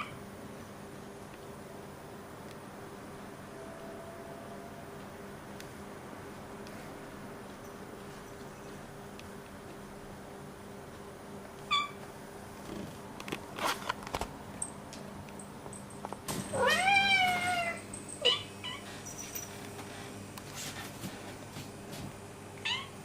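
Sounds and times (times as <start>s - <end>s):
cat chirp: 11.7s - 12.0s
cats meowing: 16.5s - 18.9s.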